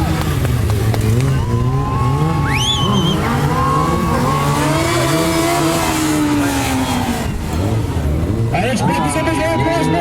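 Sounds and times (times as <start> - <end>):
motorcycle engine revving: 0.0 - 8.8
high squeal rising in pitch: 1.5 - 5.9.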